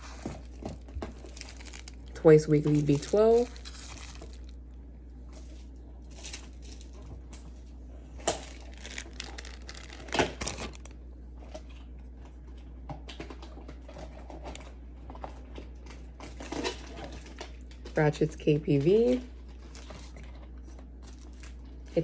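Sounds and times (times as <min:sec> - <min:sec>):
plastic crinkling: 0:00.0 - 0:04.7, 0:08.2 - 0:11.0.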